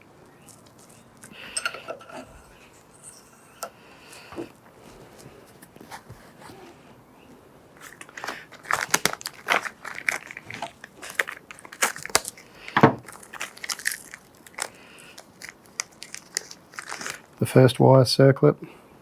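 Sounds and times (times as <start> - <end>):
plastic packaging crinkling: 0.0 - 3.0, 7.7 - 17.4.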